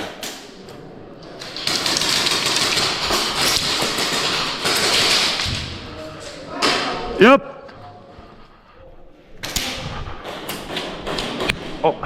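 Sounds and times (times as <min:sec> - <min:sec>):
airsoft gun rapid fire: 0:01.6 - 0:05.4.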